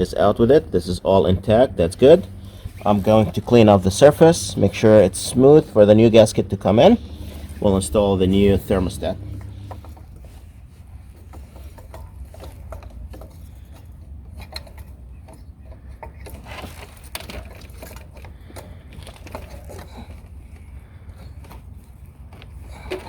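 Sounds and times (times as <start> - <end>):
steady low hum: 0.0 - 17.2.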